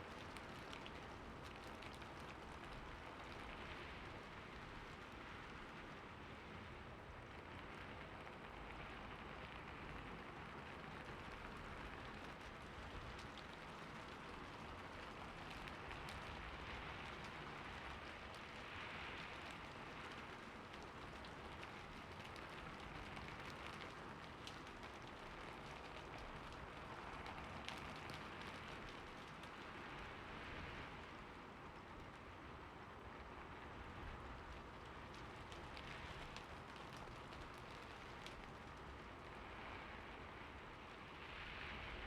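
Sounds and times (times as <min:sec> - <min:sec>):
rain pattering on a roof: 0:00.0 - 0:42.0.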